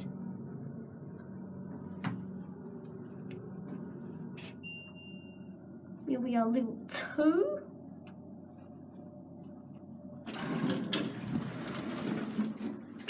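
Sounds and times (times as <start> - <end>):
lift low hum: 0.0 - 10.4
high beep: 4.4 - 5.5.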